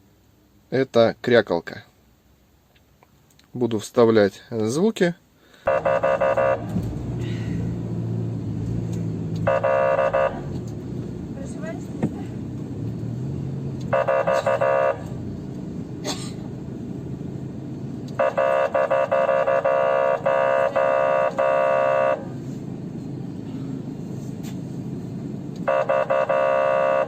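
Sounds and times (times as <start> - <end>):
low steady hum: 5.3 - 27.0
siren buzzy horn blasts: 5.7 - 11.7, 13.8 - 15.4, 18.1 - 22.6, 25.6 - 27.0.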